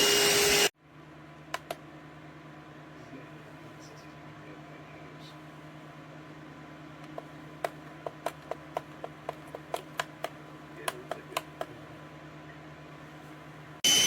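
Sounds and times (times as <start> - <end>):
vacuum cleaner motor running: 0.0 - 0.7
low steady hum: 0.7 - 14.0.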